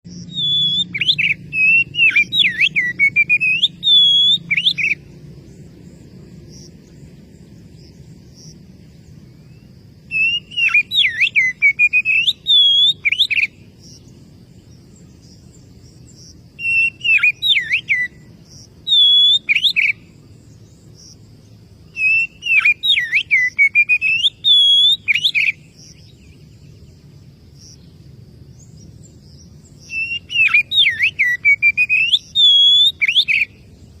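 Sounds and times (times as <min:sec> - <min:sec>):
songbird whistling phrases: 0:00.2 - 0:05.1, 0:09.4 - 0:14.0, 0:16.0 - 0:20.2, 0:21.8 - 0:26.4, 0:29.8 - 0:33.7.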